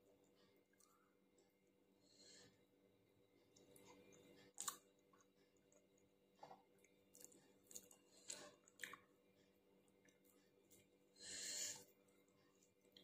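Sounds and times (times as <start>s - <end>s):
chewing and lip-smacking: 3.5s - 11.0s, 11.8s - 13.0s.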